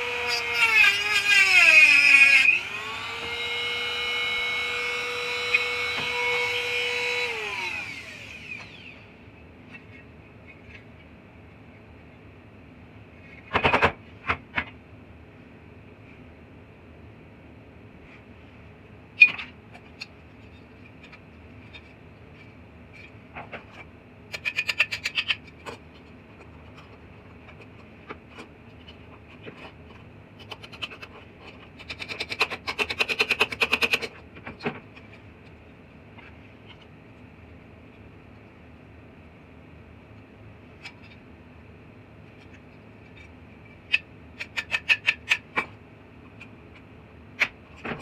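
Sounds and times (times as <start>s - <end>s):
faint steady hum: 0.0s - 32.8s.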